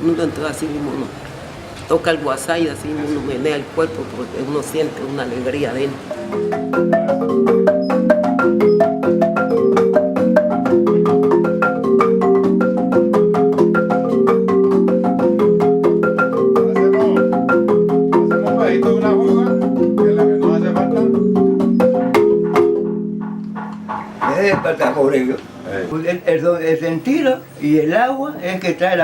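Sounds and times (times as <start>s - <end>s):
marimba playing fast tune: 3.3s - 24.9s.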